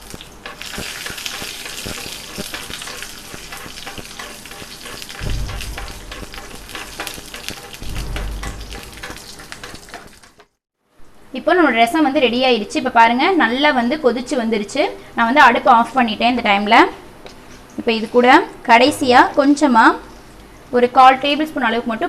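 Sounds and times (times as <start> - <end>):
seeds sizzling and popping in oil: 0.0 - 10.3
stirring in a pan: 0.0 - 10.4
low bumps: 5.2 - 9.6.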